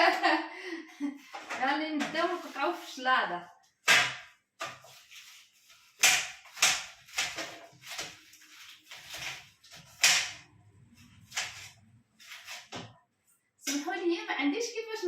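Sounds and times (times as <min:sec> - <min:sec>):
knife chopping on cutting board: 0:03.8 - 0:05.0, 0:06.0 - 0:08.2.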